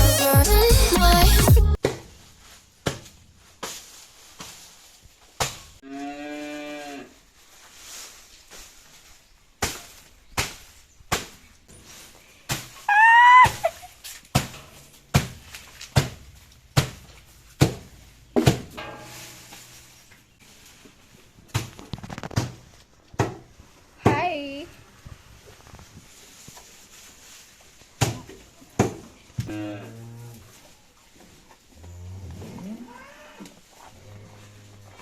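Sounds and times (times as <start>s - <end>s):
high rising and falling cry: 12.9s - 13.9s
cow mooing: 31.8s - 35.0s.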